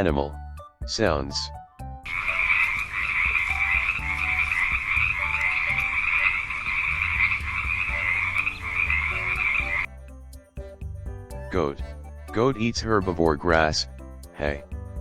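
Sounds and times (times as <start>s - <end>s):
frogs croaking: 2.1s - 9.9s.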